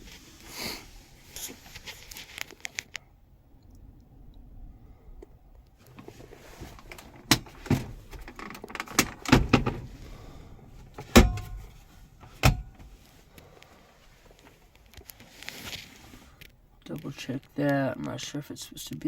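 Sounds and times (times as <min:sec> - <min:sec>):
car parts knocking and clunking: 0:05.9 - 0:13.4.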